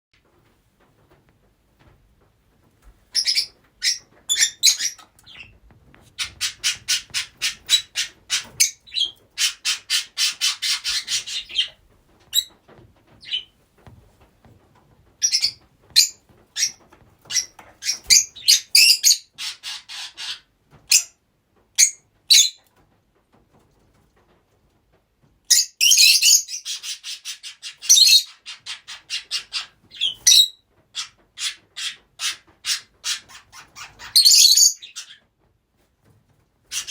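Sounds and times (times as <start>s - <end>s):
lovebirds chirping and squawking: 3.1s - 13.6s, 15.2s - 21.2s, 21.8s - 22.6s, 25.5s - 35.3s, 36.7s - 36.9s.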